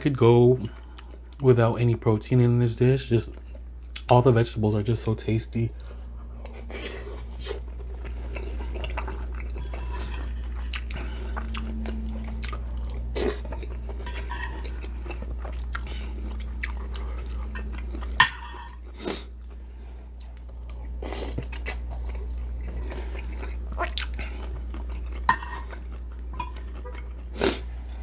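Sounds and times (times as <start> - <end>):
close chewing and biting: 6.0 - 28.0.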